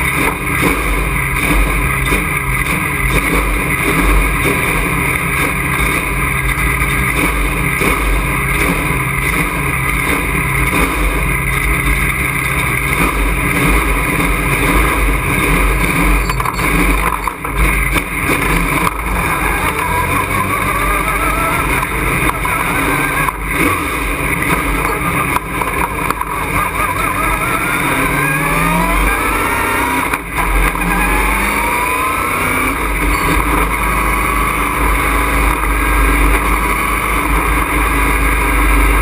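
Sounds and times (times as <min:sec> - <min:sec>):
race truck engine running hard: 0:00.0 - 0:39.0
rising whine: 0:13.2 - 0:39.0.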